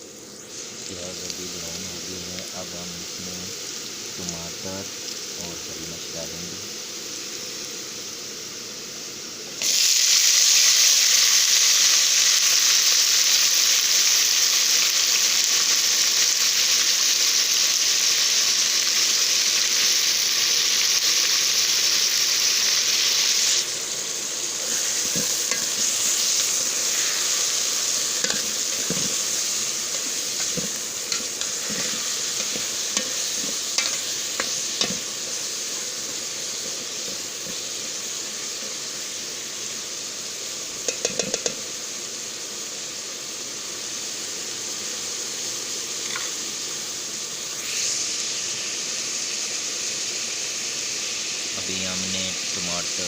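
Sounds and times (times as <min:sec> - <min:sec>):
vegetables sizzling in hot oil: 0:00.0 - 0:53.0
spoon scraping and tapping pan: 0:25.0 - 0:25.9, 0:28.2 - 0:29.2, 0:30.4 - 0:35.1, 0:40.8 - 0:41.6, 0:46.0 - 0:46.3.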